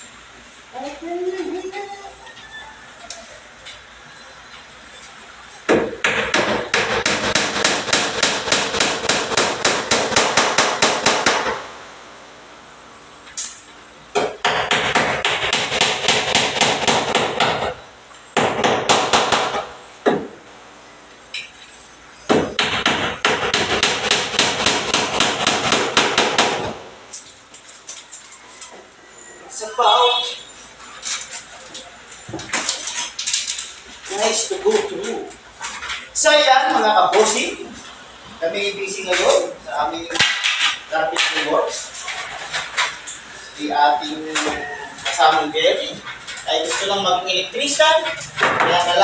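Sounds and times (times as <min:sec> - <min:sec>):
rapid hammering: 0:05.7 - 0:11.7, 0:14.2 - 0:17.8, 0:18.4 - 0:20.3, 0:22.3 - 0:26.9.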